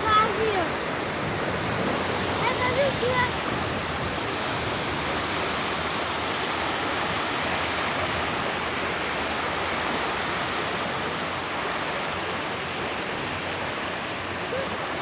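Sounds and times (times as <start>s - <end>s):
steady rushing noise: 0.0s - 15.0s.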